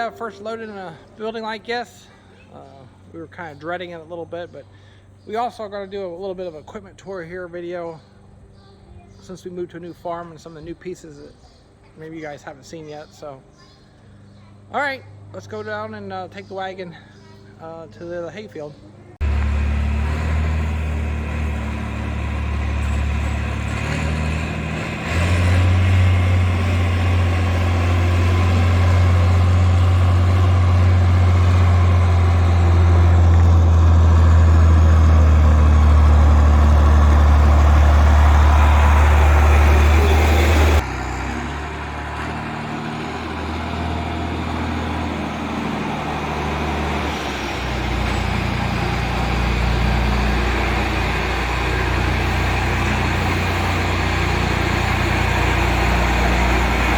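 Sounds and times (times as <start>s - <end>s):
tractor engine running: 19.2s - 56.9s.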